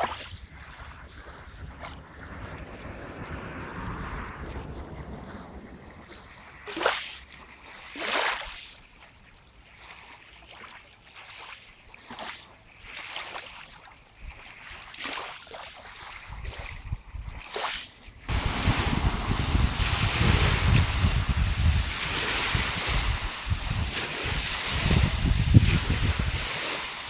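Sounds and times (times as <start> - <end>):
light wind rumble: 0.0 - 8.0, 18.1 - 27.0
lake water lapping at shore: 0.0 - 27.0.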